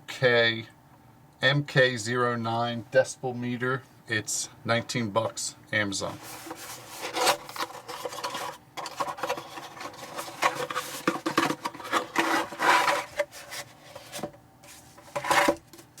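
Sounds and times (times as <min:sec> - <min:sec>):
packaging scraping and rustling: 0:06.2 - 0:16.0.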